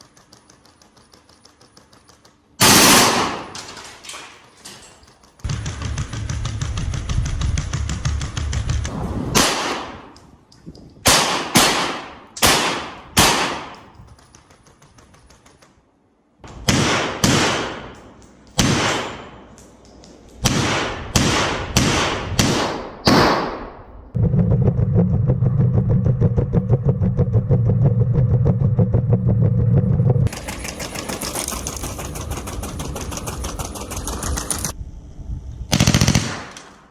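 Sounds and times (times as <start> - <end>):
rapid gunfire rattle: 0.0 - 4.4, 5.0 - 10.2, 11.0 - 15.9, 30.3 - 34.8, 35.7 - 36.9
gunshots with echoing tails: 2.6 - 3.8, 8.9 - 10.4, 11.0 - 14.0, 16.5 - 19.5, 20.4 - 24.2, 35.7 - 36.9.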